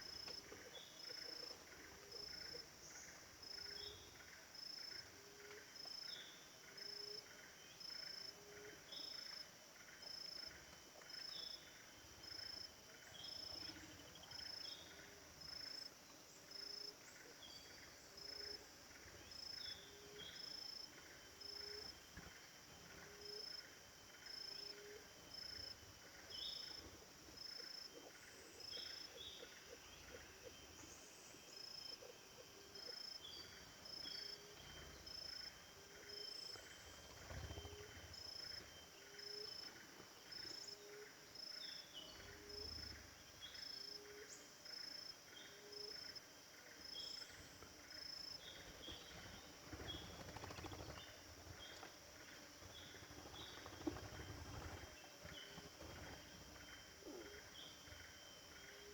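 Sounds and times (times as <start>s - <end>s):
high insect chirps: 16.5s - 58.9s.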